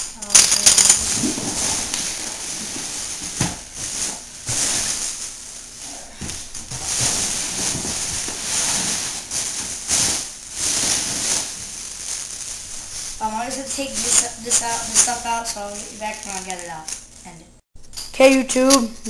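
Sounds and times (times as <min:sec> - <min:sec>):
plastic packaging rustling: 0:00.2 - 0:17.4.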